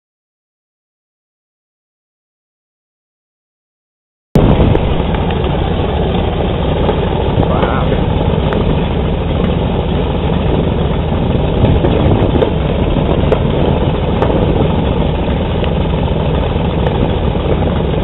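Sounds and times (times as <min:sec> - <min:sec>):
aircraft engines droning: 0:04.4 - 0:18.0.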